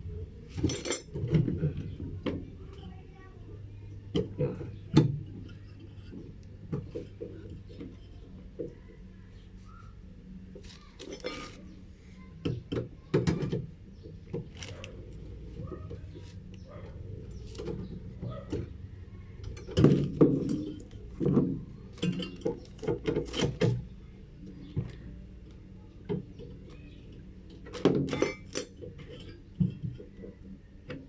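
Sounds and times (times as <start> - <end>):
tools and parts clattering: 0.5 - 2.9, 4.1 - 8.8, 10.6 - 11.8, 12.4 - 18.8, 19.4 - 23.9, 26.0 - 31.0.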